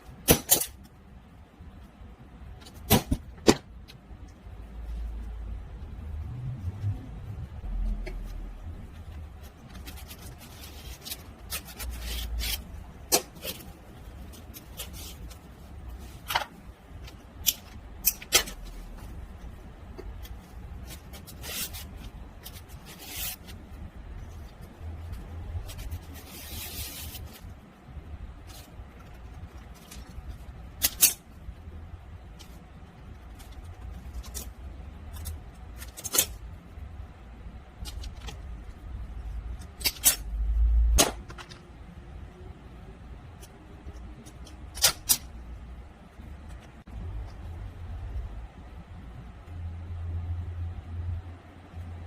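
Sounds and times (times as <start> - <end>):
low steady hum: 0.0 - 52.0.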